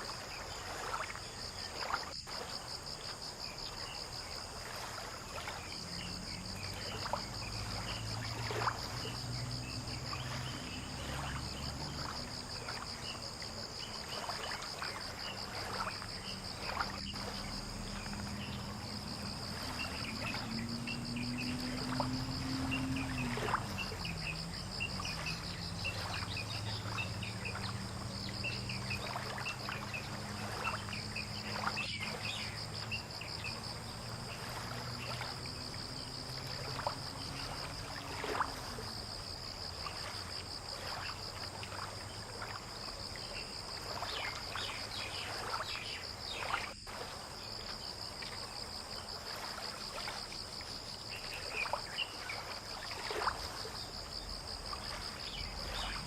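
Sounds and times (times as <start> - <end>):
pulsing insect trill: 0.0 - 56.0
low motor hum: 16.2 - 39.3.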